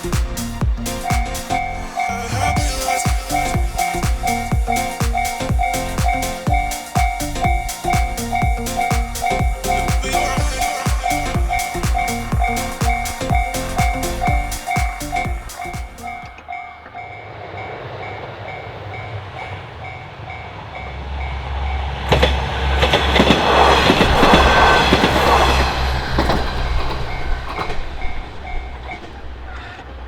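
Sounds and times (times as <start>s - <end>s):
train rumble: 0.0s - 30.0s
two-tone crossing bell ringing: 0.8s - 17.2s
rail-joint clicks: 22.1s - 30.0s.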